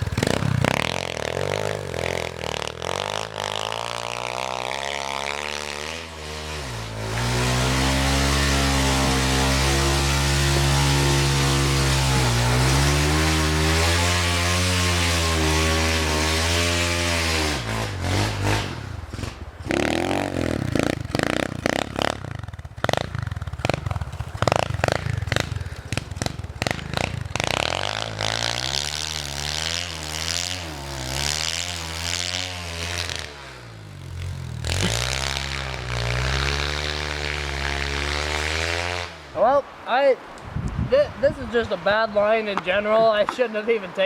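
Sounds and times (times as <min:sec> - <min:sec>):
dirt bike engine revving: 0:00.0 - 0:39.6.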